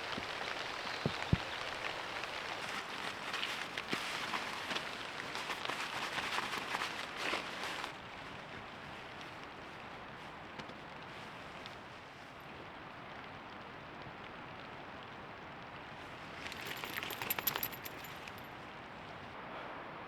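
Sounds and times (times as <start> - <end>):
light rain: 0.0 - 20.0
light metallic clinks: 16.4 - 18.6.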